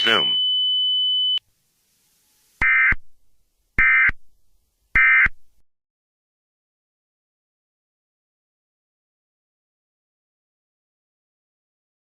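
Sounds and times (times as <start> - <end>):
harsh digital data tone bursts: 0.0 - 0.4.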